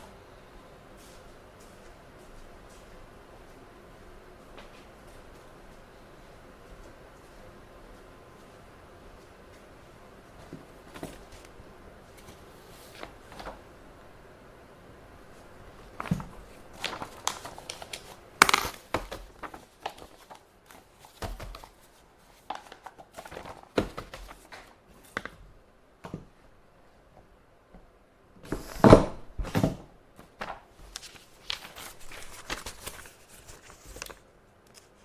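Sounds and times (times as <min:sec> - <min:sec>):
paper rustling and crinkling: 0:12.1 - 0:13.6, 0:15.3 - 0:25.4, 0:29.6 - 0:35.0.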